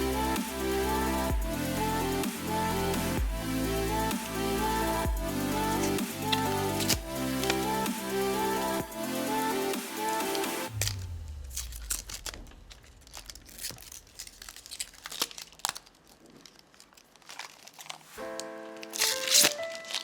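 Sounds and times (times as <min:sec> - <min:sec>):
background music: 0:00.0 - 0:11.9
packaging crinkling and rustling: 0:10.7 - 0:20.0.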